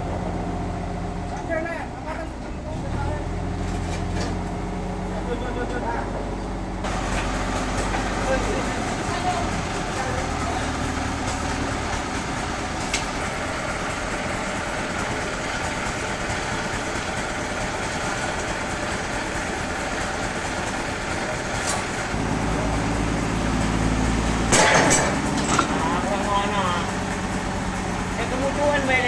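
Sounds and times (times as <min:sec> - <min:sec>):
deep engine hum: 0:00.0 - 0:29.0
sawmill machinery running: 0:00.0 - 0:29.0
loud clatter: 0:06.8 - 0:29.0.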